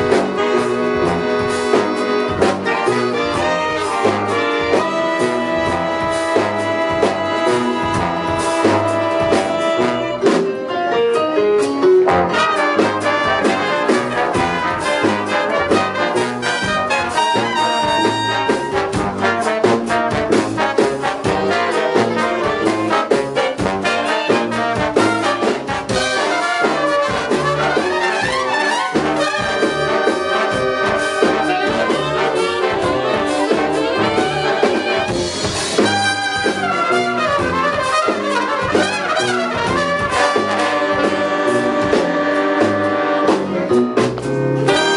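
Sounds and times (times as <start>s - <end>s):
trumpets and trombones: 0.0s - 10.6s, 11.9s - 44.9s
woodwinds: 0.0s - 10.7s, 12.1s - 44.9s
bass: 0.0s - 44.9s
drum kit: 0.0s - 44.9s.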